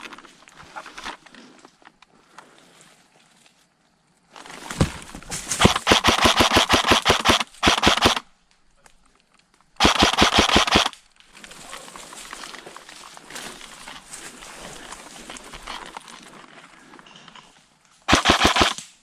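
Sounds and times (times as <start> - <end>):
airsoft gun automatic bursts: 5.6 - 8.3, 9.8 - 10.9, 18.1 - 18.9.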